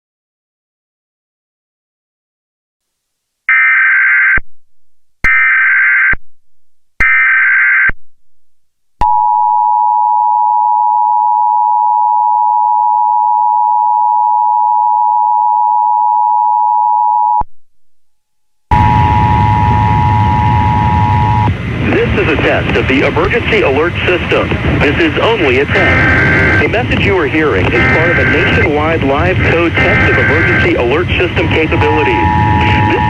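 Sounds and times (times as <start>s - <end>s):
two-tone electronic attention signal: 18.7s - 21.5s, 25.7s - 26.8s, 27.7s - 28.7s, 29.4s - 33.0s
loud noisy sound: 18.7s - 33.0s
screeching digital header bursts: 25.4s - 33.0s.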